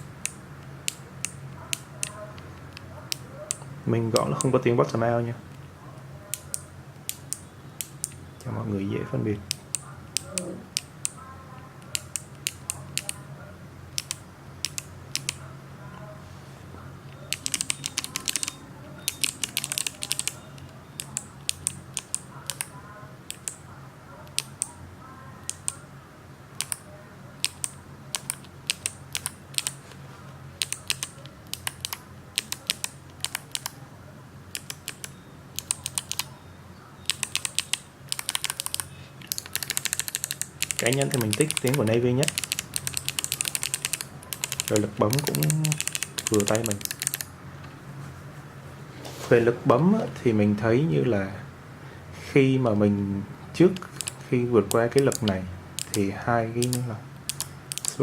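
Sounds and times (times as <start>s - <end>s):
clicky keyboard keystrokes: 11.8s - 13.2s, 14.0s - 15.4s, 17.1s - 23.6s, 24.2s - 24.8s, 26.6s - 26.8s, 27.4s - 29.8s, 30.6s - 33.8s, 34.5s - 36.4s, 37.0s - 47.3s, 53.8s - 58.0s.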